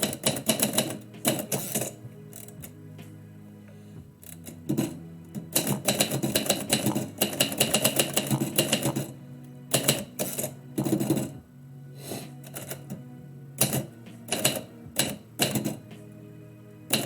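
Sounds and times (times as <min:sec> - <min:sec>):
typewriter keys clacking: 0:05.6 - 0:09.0.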